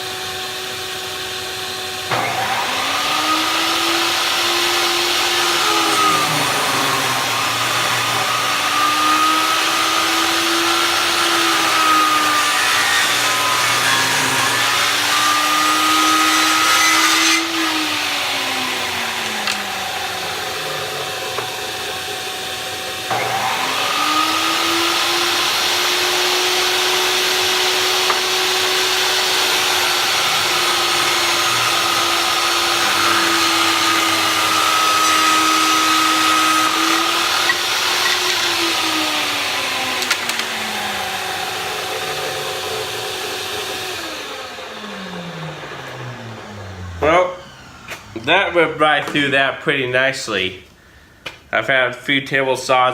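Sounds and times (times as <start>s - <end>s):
table saw cutting wood: 0.0s - 49.8s.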